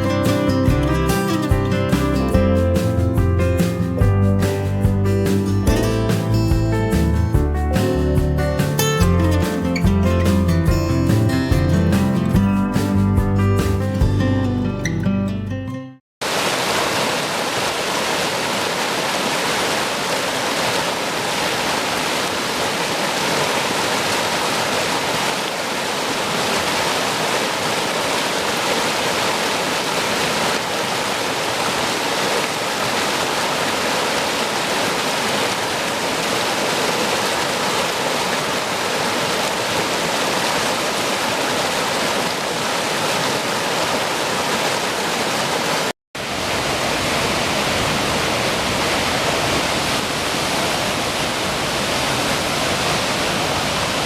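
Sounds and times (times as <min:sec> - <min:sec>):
mountain stream rushing: 0:00.0 - 0:03.9, 0:16.2 - 0:54.0.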